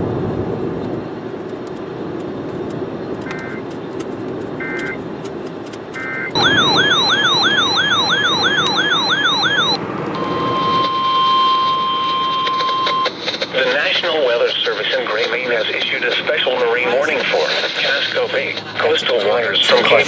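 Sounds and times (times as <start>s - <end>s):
warbling siren-like alarm: 3.3s - 3.6s, 4.6s - 5.0s, 6.0s - 13.3s
steady alert tone: 6.0s - 9.8s.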